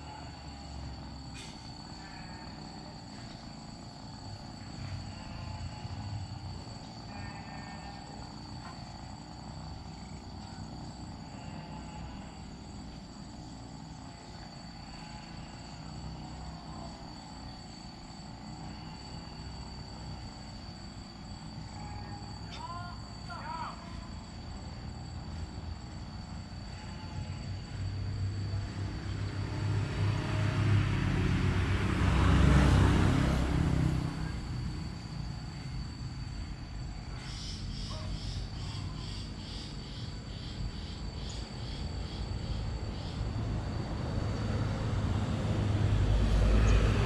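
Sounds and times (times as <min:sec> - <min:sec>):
vehicle passing by: 0:23.4 - 0:47.0.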